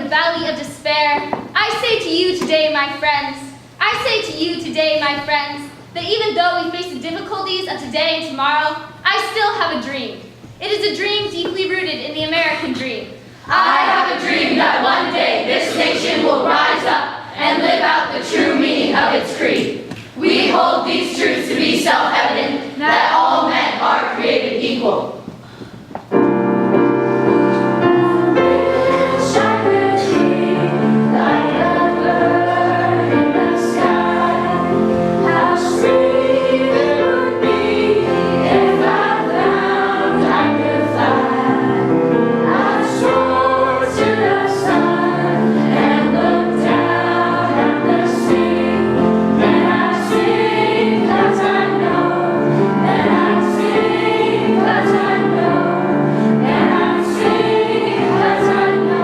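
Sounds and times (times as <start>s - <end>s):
choir singing: 13.5s - 25.2s, 27.5s - 59.0s.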